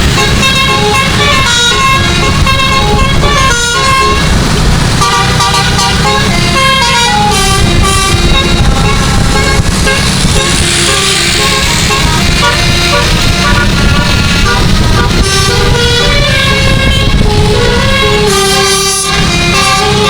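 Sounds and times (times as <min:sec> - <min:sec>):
musical air horn melody: 0:00.0 - 0:20.0
low rumble: 0:06.2 - 0:19.6.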